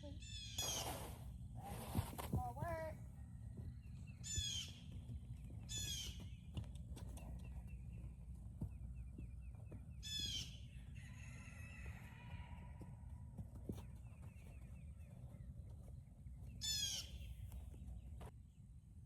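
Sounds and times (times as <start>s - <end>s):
bird harsh calls: 0.0s - 1.2s, 4.0s - 6.6s, 9.0s - 11.4s, 16.6s - 17.4s.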